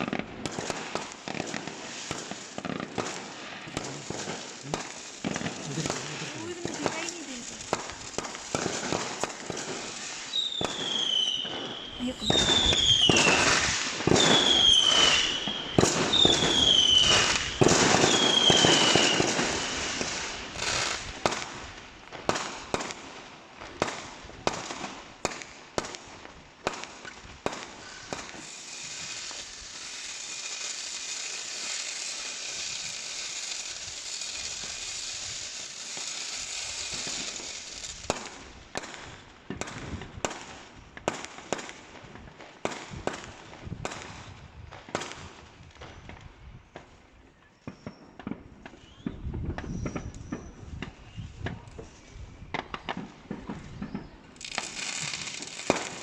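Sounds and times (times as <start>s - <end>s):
falling firework whistles: 0.0s - 21.7s, 26.6s - 40.4s, 45.8s - 56.0s
fireworks bangs and cracks: 0.0s - 47.0s, 47.7s - 56.0s
steady high hiss: 0.8s - 14.0s, 27.7s - 38.1s.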